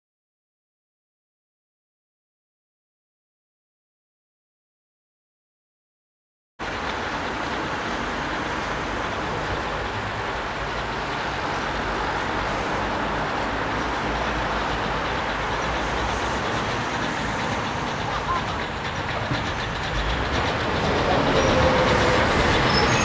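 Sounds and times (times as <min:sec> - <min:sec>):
steam train rumbling: 0:06.6 - 0:23.0.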